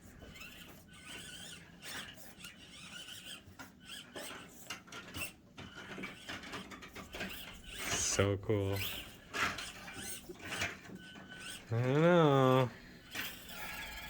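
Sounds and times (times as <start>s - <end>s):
small electric motor whining: 0.0s - 14.0s.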